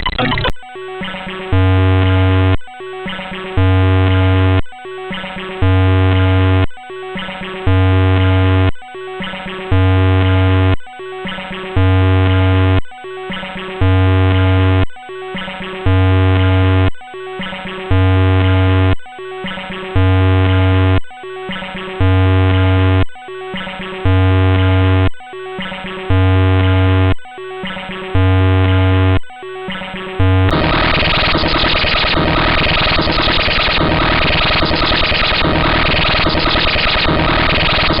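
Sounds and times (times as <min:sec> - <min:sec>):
distorted electronic music loop: 0:00.0 - 0:10.4, 0:27.8 - 0:38.0
loud low buzz: 0:30.4 - 0:38.0.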